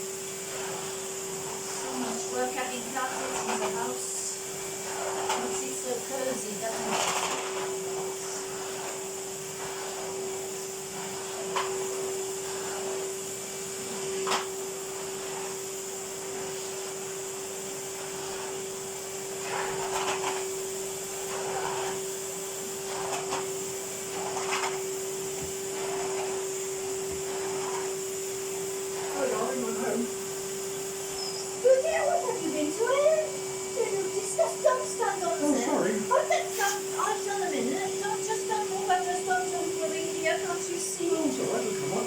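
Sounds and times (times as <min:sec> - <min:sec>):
vacuum cleaner humming: 0:00.0 - 0:42.0.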